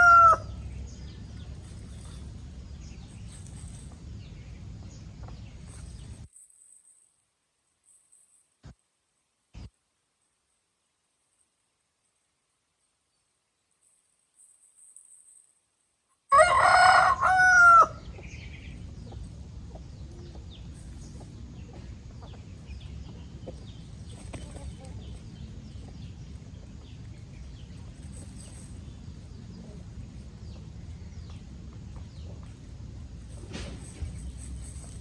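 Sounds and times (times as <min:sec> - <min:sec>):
rooster crowing: 0:00.0 - 0:00.6, 0:16.3 - 0:18.1
low background hum: 0:00.0 - 0:06.8, 0:17.0 - 0:35.0.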